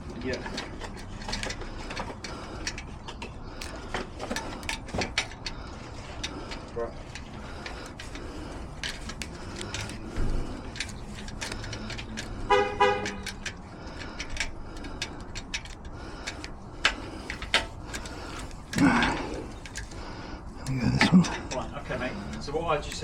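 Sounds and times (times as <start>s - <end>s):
horn toot: 12.5s - 13.2s.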